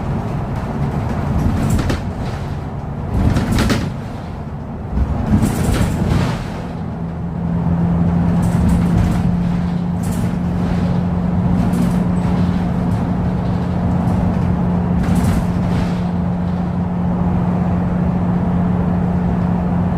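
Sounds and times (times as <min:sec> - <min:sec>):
bus engine drone: 0:00.0 - 0:19.9
road and tyre noise: 0:00.0 - 0:19.9
hissing rattles: 0:08.4 - 0:16.7.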